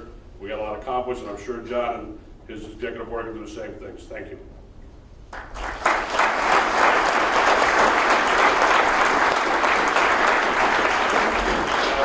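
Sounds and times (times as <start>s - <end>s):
audience applauding: 5.3s - 12.0s.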